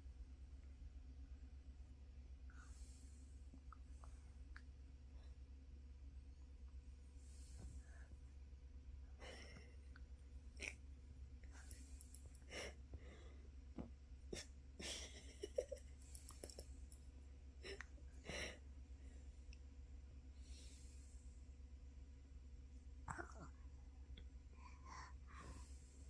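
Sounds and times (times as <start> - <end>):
steady low hum: 0.0 - 26.0
soft breathing: 2.4 - 5.6, 7.0 - 8.5, 11.4 - 13.8, 17.6 - 21.7, 23.1 - 26.0.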